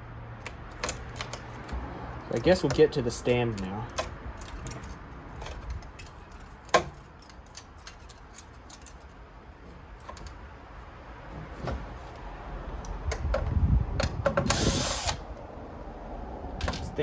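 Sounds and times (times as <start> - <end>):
heavy handling noise: 0.4 - 12.3
metallic clicks of tools: 3.4 - 9.2.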